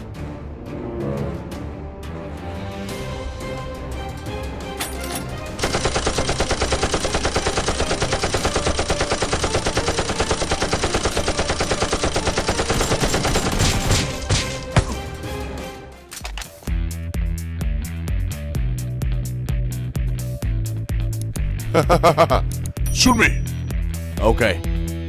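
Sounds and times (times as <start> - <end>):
background music: 0.0 - 25.0
rapid automatic gunfire: 5.6 - 14.4.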